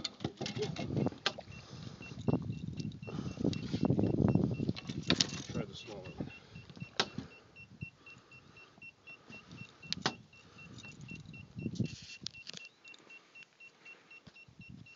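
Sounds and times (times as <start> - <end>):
handling knocks and clunks: 0.0 - 1.5, 4.6 - 7.4
rapid electronic warning beeps: 0.7 - 14.9.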